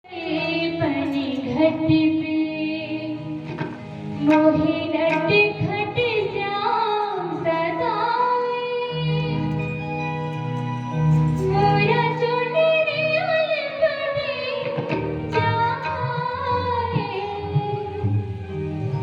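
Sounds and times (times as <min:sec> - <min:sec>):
young female voice singing: 0:04.2 - 0:09.4, 0:11.4 - 0:18.0.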